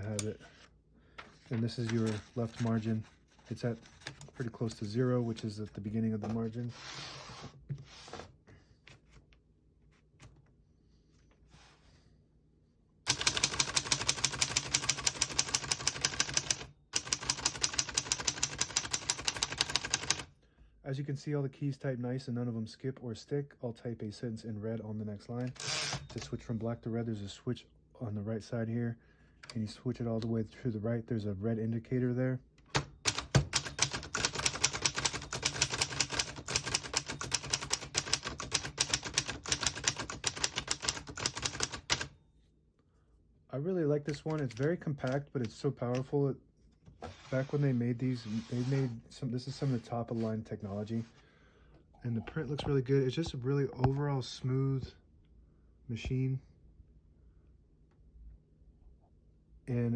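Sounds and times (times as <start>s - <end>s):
typewriter key strikes: 32.8s - 42.1s.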